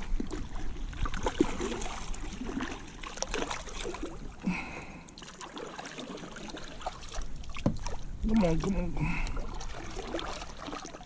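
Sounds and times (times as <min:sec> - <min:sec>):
water sloshing around kayak: 0:00.0 - 0:11.0.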